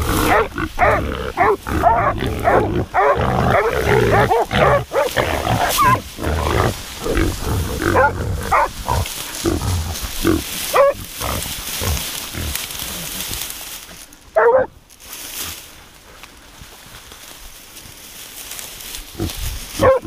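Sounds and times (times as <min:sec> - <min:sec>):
wild boar grunting and squealing: 0:00.0 - 0:14.0, 0:19.1 - 0:20.0.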